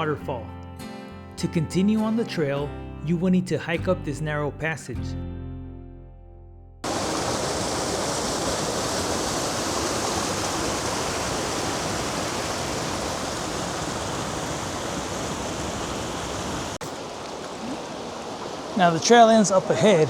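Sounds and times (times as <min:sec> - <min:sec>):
guitar music: 0:00.0 - 0:06.8
creek water and waterfall: 0:06.8 - 0:20.0.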